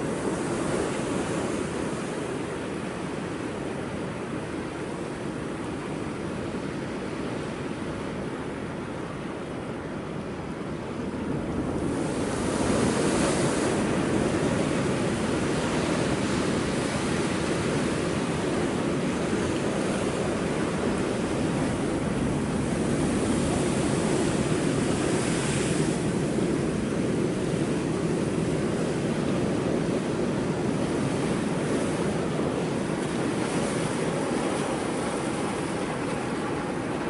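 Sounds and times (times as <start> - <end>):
ocean waves breaking on rocks: 0.0 - 9.0, 11.0 - 37.0
wind on microphone: 11.0 - 37.0.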